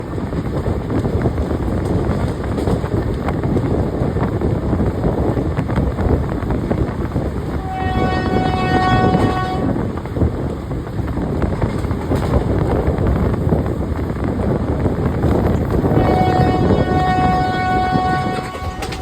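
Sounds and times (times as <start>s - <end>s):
train rumbling at speed: 0.0s - 19.0s
locomotive horn: 7.6s - 9.8s, 16.0s - 19.0s.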